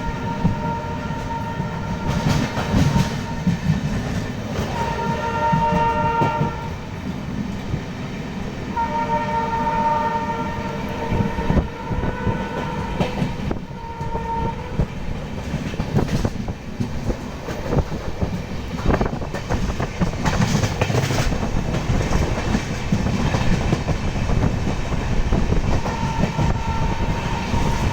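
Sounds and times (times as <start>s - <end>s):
locomotive horn blasts: 0.0s - 3.7s, 4.7s - 6.8s, 8.8s - 14.9s, 25.8s - 27.9s
train rumble with wheel clatter: 0.0s - 27.9s.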